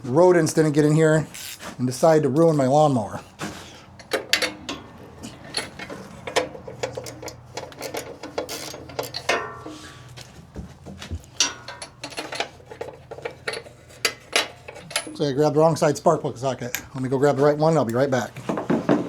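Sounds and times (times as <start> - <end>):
socket wrench metal clinks: 11.4 - 15.2.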